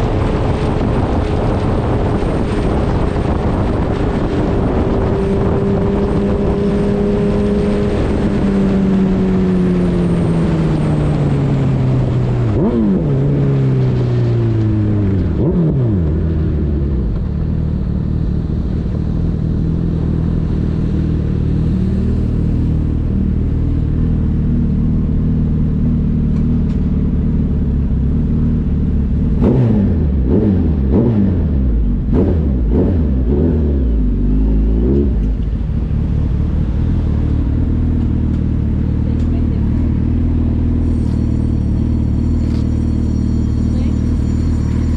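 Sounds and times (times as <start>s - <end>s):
motorcycle engine: 0.0s - 44.9s
engine revving in blips: 29.2s - 35.9s.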